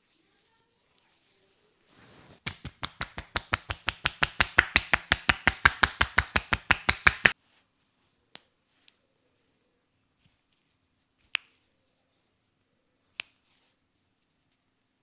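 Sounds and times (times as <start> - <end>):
hands slapping on a head: 2.4 - 7.4.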